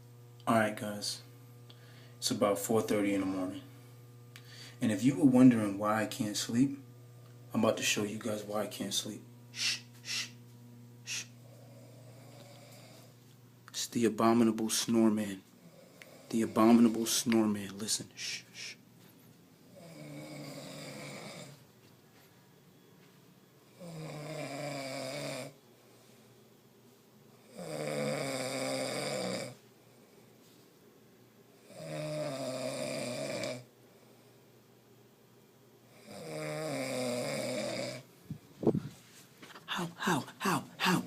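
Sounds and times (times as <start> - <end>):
man snoring: 11.1 - 13.1, 19.7 - 21.6, 23.7 - 25.6, 27.4 - 29.6, 31.6 - 33.7, 35.9 - 38.1.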